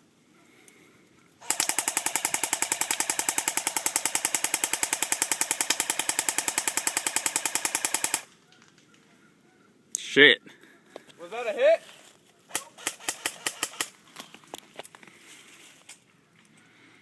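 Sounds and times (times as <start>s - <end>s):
airsoft gun full-auto burst: 1.4s - 8.3s, 12.5s - 13.9s.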